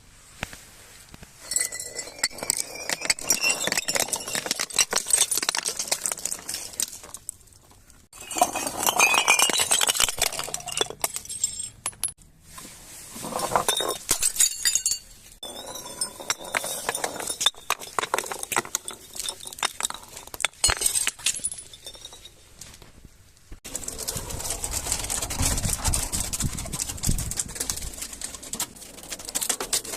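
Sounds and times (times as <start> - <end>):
broken glass clinking and crunching: 1.4 - 12.2, 13.4 - 22.8.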